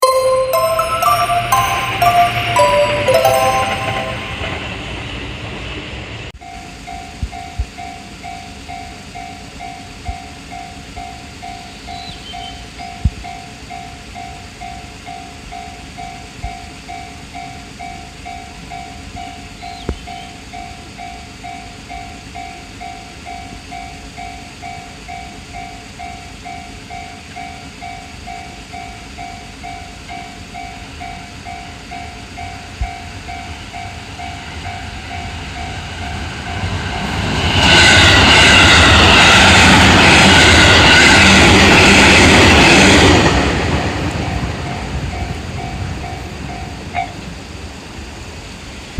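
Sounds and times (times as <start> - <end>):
electric train passing: 0.0 - 7.2, 20.4 - 48.9
railroad crossing bell ringing: 0.0 - 36.8, 44.2 - 47.3.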